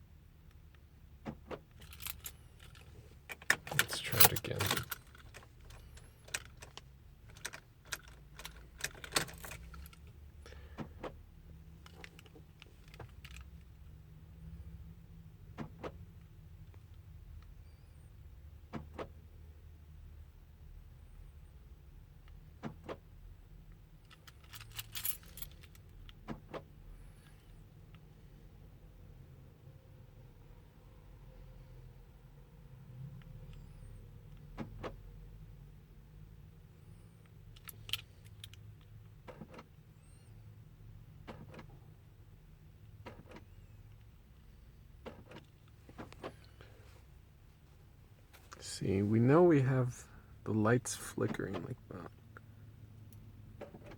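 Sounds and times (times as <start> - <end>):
keys jangling on key ring: 3.7 - 6.6, 24.1 - 25.8.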